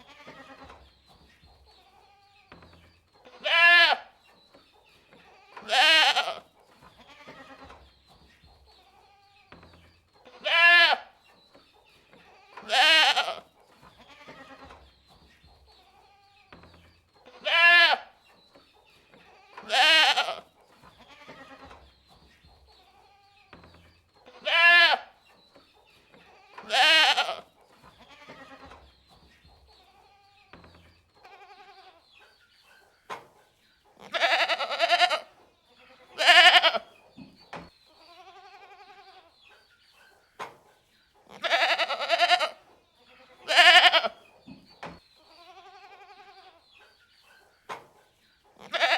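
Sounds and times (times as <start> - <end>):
goats bleating: 0.0 - 0.7, 3.4 - 4.1, 5.4 - 7.7, 10.4 - 11.1, 12.4 - 14.7, 17.4 - 18.1, 19.4 - 21.7, 24.4 - 25.2, 26.3 - 28.8, 31.2 - 32.0, 34.0 - 36.9, 38.1 - 39.3, 41.3 - 44.2, 45.4 - 46.6, 48.6 - 48.9.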